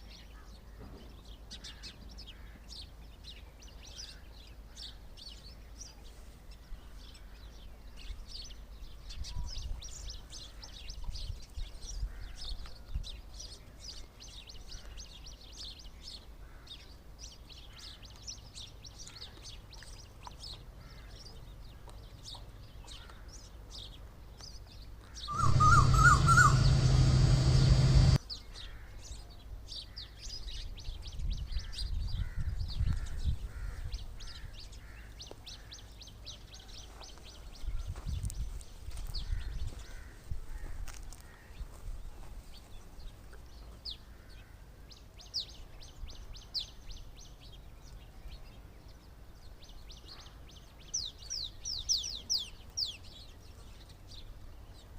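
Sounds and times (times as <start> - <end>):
small birds chirping: 0.0 - 32.0, 40.8 - 54.9
loud trilling call: 25.3 - 28.2.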